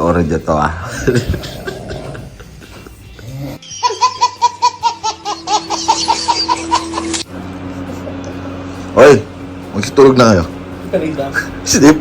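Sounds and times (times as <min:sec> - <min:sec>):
high-pitched laughter sound effect: 0:01.2 - 0:07.2.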